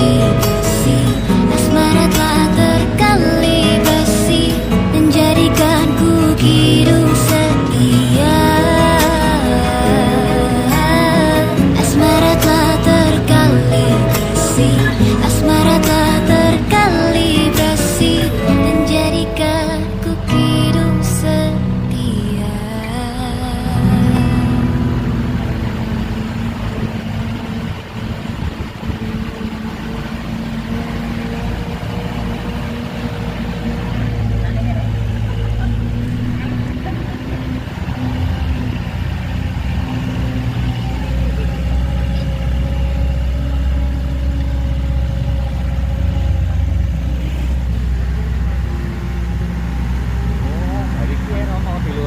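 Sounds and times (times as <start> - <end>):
low hum: 0.0 - 52.0
road noise: 0.0 - 52.0
vehicle engine drone: 0.0 - 52.0.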